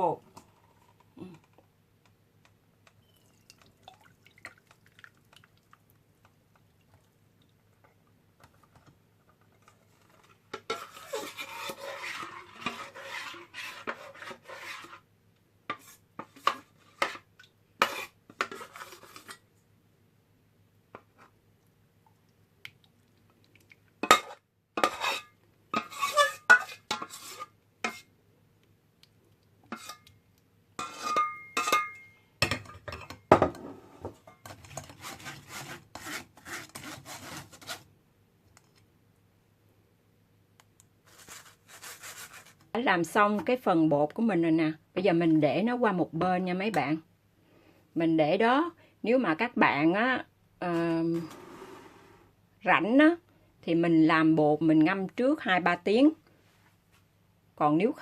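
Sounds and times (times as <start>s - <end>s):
utensil scraping and stirring: 8.5s - 15.1s, 15.7s - 19.4s, 23.6s - 28.1s, 29.6s - 30.2s, 30.8s - 31.8s, 34.0s - 37.9s, 41.0s - 42.7s.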